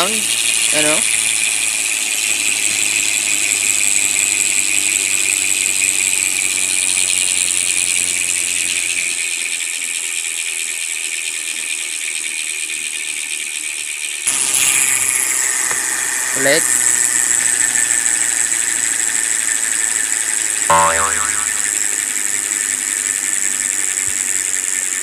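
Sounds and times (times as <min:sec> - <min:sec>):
low hum: 0:20.7 - 0:22.0.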